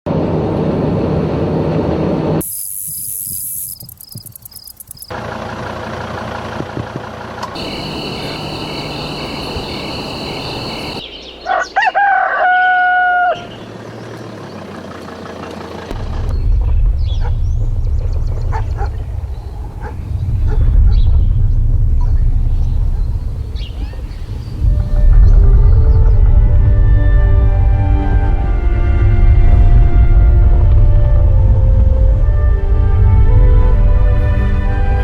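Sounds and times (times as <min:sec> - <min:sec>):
rooster crowing: 0:07.6 - 0:13.6.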